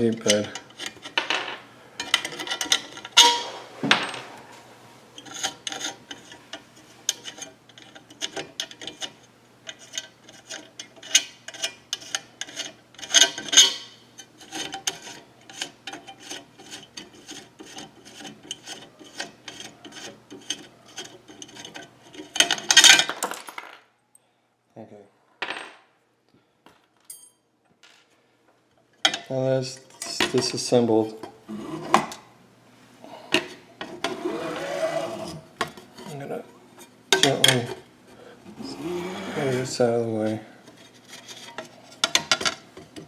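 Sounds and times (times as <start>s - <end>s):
faint steady hum: 0.0s - 43.0s
metal clinks: 27.0s - 27.4s.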